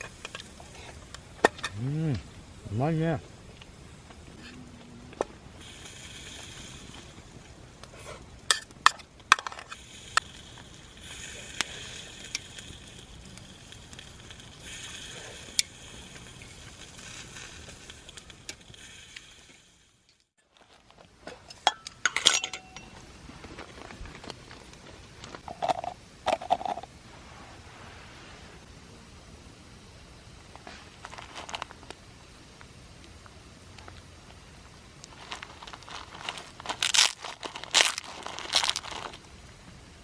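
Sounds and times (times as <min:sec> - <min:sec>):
faint background noise: 0:00.0 - 0:40.0
utensils clinking against bowls: 0:21.5 - 0:23.0.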